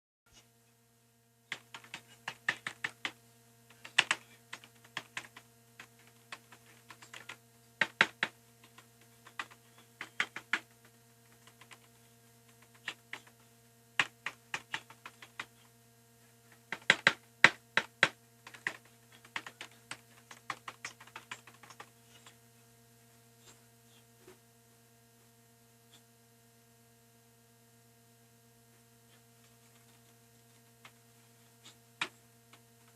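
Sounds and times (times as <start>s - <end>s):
mechanical keyboard typing: 1.5s - 3.2s, 3.8s - 11.9s, 12.5s - 13.3s, 14.0s - 15.5s, 16.7s - 21.9s.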